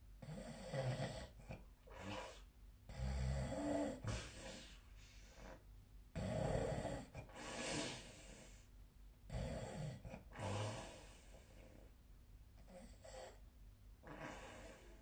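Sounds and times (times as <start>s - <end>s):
person snoring: 6.2s - 8.4s, 9.3s - 11.6s, 14.0s - 15.0s.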